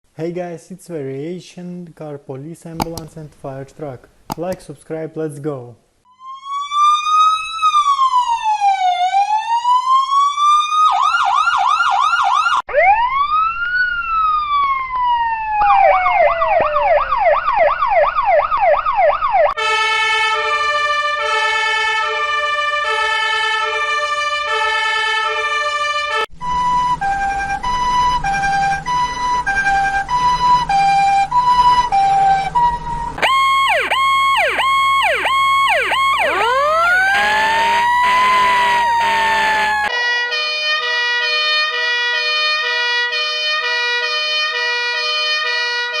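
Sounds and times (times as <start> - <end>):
emergency vehicle sirens: 6.2 - 40.0.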